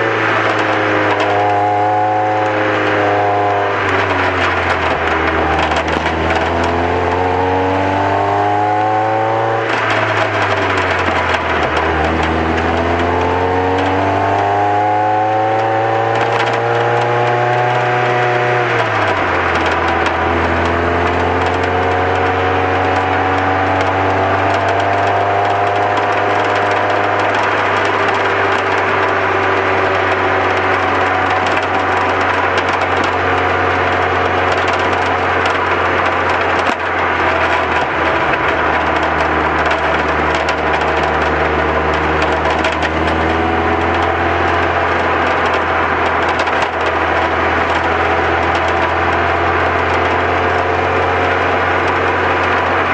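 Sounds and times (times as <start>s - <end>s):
car engine accelerating: 0.0s - 52.9s
wind and road noise: 0.0s - 52.9s
wind buffeting microphone: 27.2s - 50.0s.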